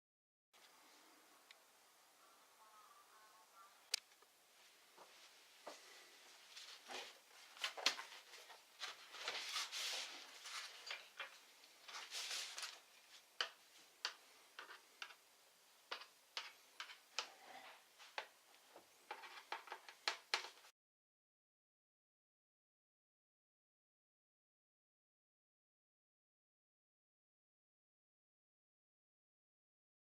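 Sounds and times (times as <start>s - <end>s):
scraping rustles: 6.4s - 11.2s, 11.9s - 12.9s.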